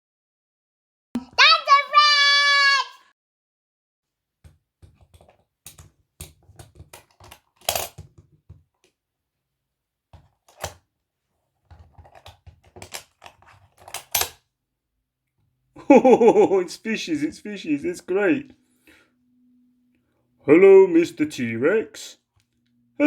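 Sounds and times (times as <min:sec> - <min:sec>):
wooden latches clicking and clacking: 0:04.9 - 0:08.3, 0:11.7 - 0:14.4.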